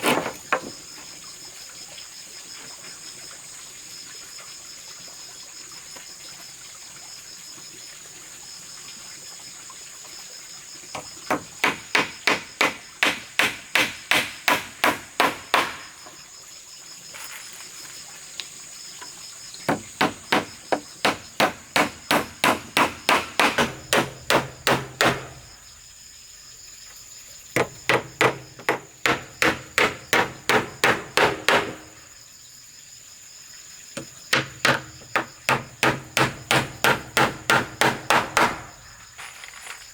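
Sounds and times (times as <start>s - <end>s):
high insect drone: 0.0s - 39.9s
hammering: 11.0s - 16.0s, 19.7s - 25.5s, 27.6s - 32.0s, 34.3s - 38.7s.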